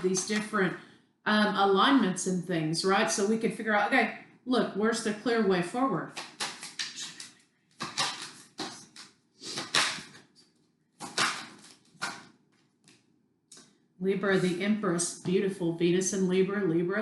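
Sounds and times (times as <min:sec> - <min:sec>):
cards being shuffled: 0:06.1 - 0:13.1.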